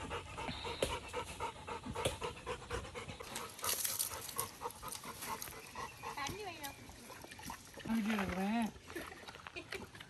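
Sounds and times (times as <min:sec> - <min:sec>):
dog panting: 0:00.0 - 0:06.8.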